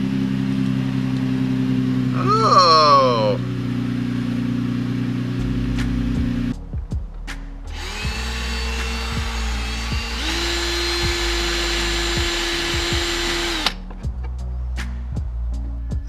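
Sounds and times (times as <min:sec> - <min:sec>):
power drill whining: 0:07.7 - 0:13.8.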